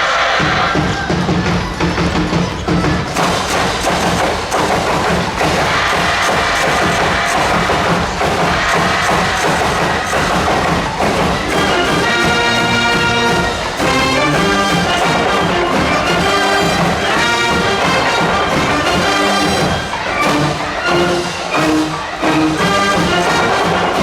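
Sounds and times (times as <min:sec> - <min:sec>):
wind band playing: 0:03.2 - 0:24.0
brass sustained chords: 0:11.4 - 0:24.0.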